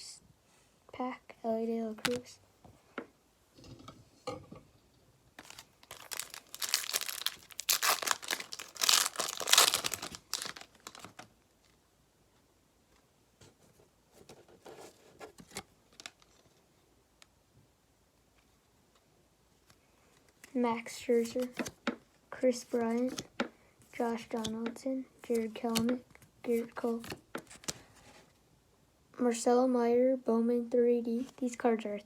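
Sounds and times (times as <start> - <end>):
wrapper tearing and crinkling: 5.4 - 11.3.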